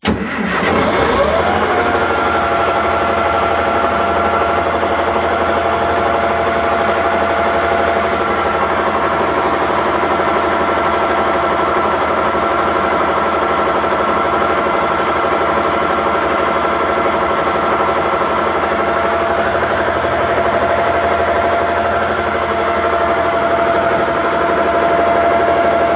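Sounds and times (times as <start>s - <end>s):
diesel engine running: 0.0s - 25.9s
low whine: 0.7s - 13.1s, 16.7s - 25.9s
high whine: 17.4s - 25.9s.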